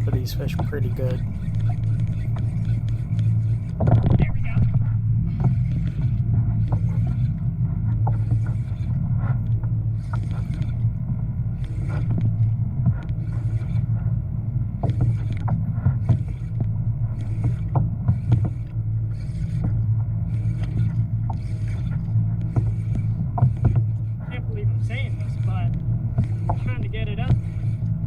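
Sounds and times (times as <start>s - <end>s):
fishing reel cranking: 0.0s - 4.7s, 11.5s - 14.0s, 14.8s - 27.9s
steady low hum: 0.0s - 28.0s.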